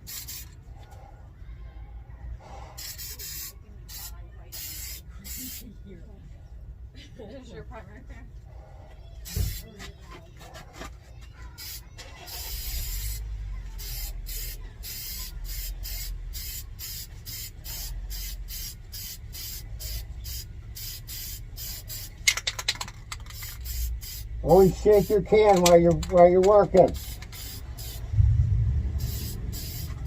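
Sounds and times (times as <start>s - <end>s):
spray can rattling when shaken: 0.0s - 0.6s, 2.8s - 5.6s, 9.2s - 9.6s, 11.6s - 28.1s, 29.0s - 30.0s
spray paint can hissing: 0.0s - 0.6s, 2.8s - 5.6s, 9.2s - 9.7s, 11.6s - 28.1s, 29.0s - 30.0s.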